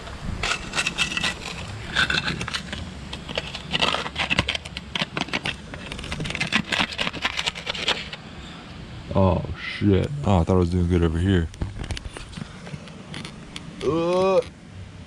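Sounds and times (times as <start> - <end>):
barnacles scraped off boat hull: 0.4 - 8.2.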